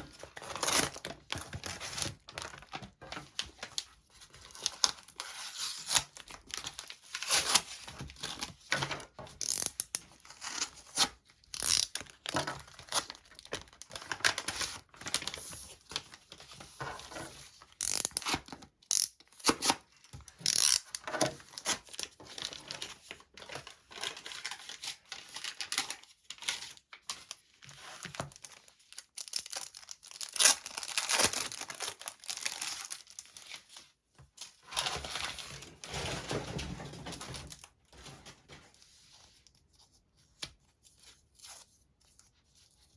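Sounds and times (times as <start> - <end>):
packaging tearing and crinkling: 9.4 - 15.6, 28.2 - 33.6.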